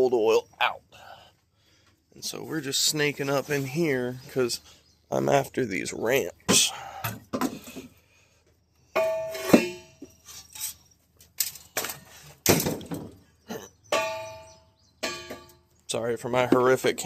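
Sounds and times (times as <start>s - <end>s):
objects knocking and clanking: 6.5s - 7.9s, 9.0s - 15.7s.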